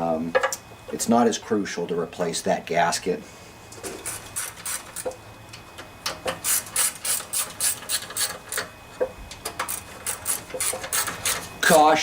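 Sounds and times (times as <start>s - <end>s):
ratchet wrench clicking: 4.0s - 5.2s, 6.3s - 8.7s, 9.6s - 11.5s.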